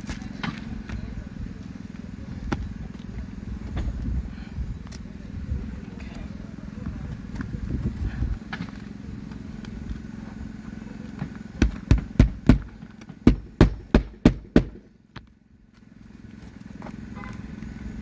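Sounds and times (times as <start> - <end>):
hammer striking nails: 11.6 - 14.9.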